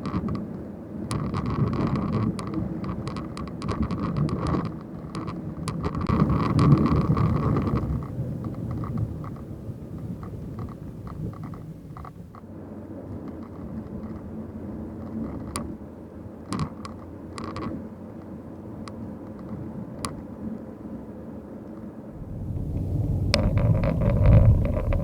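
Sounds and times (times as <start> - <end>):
sharp clicks and creaks: 0.0 - 12.5, 13.3 - 14.3, 15.0 - 15.8, 16.4 - 18.3, 22.2 - 25.0
car driving rumble: 22.2 - 25.0.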